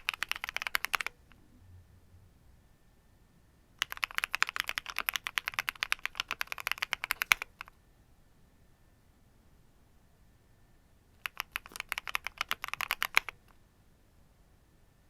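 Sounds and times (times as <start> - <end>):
fast mechanical keyboard typing: 0.0 - 1.2, 3.8 - 7.7, 11.2 - 13.5.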